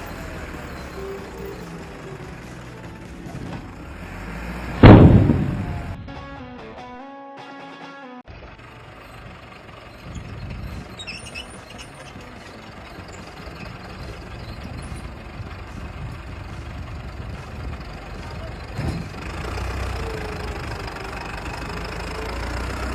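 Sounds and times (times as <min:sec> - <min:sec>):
held musical chord: 0:00.0 - 0:04.1
vehicle engine running: 0:00.0 - 0:06.3, 0:08.3 - 0:22.9.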